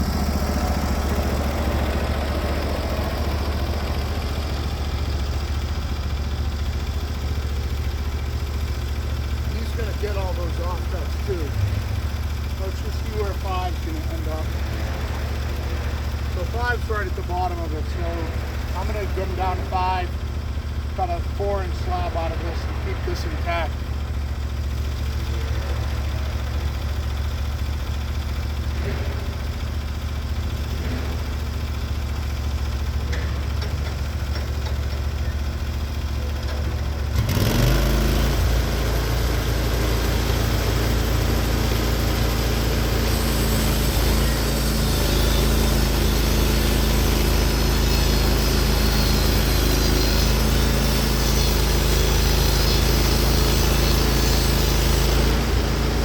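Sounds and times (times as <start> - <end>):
sawmill engine running: 0.0 - 56.0
band saw cutting log: 7.4 - 20.2, 21.0 - 23.9, 37.2 - 56.0.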